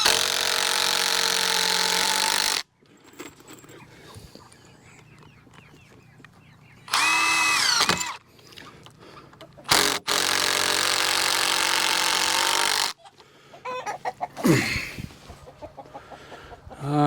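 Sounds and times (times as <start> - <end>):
power tool running: 0.0 - 2.6, 6.9 - 8.2, 9.7 - 13.0
chickens calling: 2.7 - 10.0, 12.7 - 17.0.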